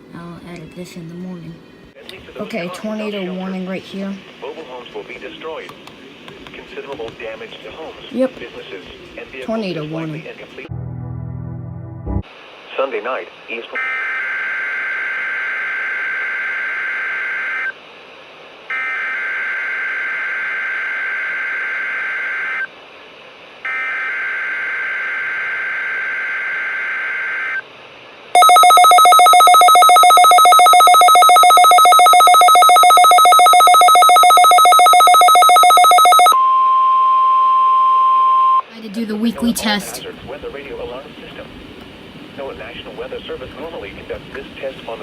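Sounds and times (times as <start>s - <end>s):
steady alert tone: 28.4s - 36.4s
pulsing two-tone alert alarm: 28.4s - 36.5s.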